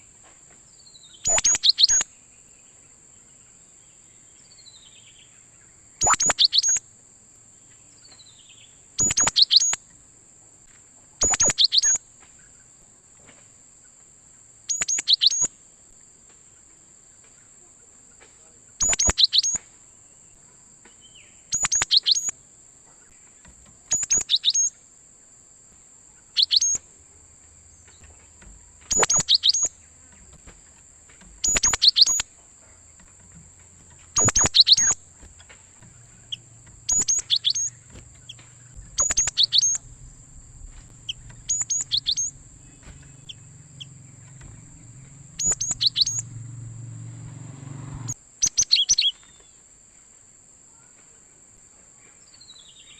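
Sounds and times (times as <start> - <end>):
faint low hum: 15.7 - 52.9
steady high whine: 26.8 - 48.2
bird calling sharp high notes: 28.9 - 29.8, 31.4 - 32.3, 34.2 - 35.1, 36.0 - 40.1, 40.7 - 46.9.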